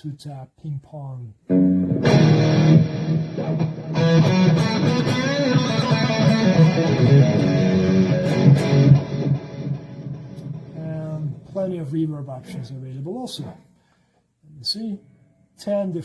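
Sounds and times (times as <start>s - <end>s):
electric guitar playing: 1.5s - 11.5s.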